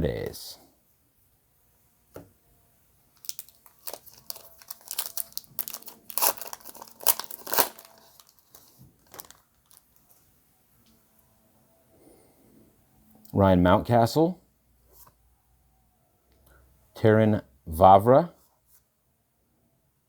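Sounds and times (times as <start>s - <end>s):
card pack wrapper tearing and crinkling: 3.2s - 10.1s
wrapper rustling: 3.2s - 10.2s.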